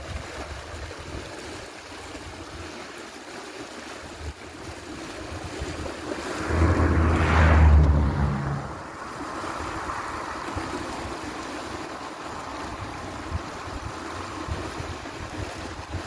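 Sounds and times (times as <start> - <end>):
rushing water: 0.0 - 16.0
wind on microphone: 4.2 - 16.0
low droning engine hum: 5.9 - 15.0.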